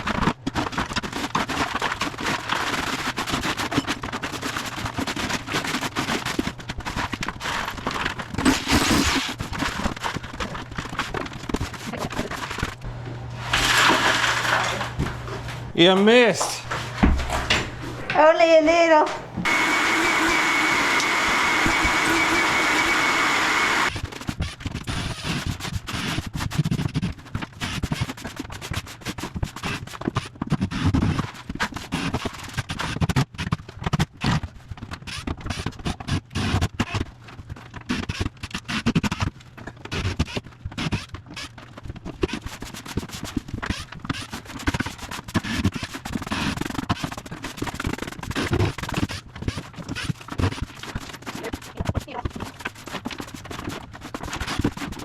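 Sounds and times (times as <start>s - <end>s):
scraping and knocking: 16.6s - 19.8s.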